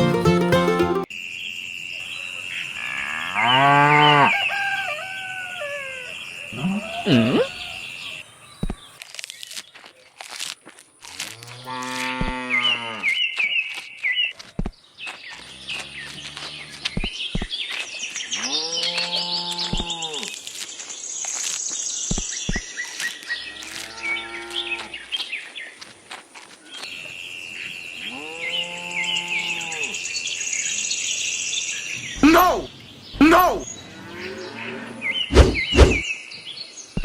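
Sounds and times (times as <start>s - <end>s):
birds chirping: 30.9s - 36.2s
cattle mooing: 32.2s - 36.0s.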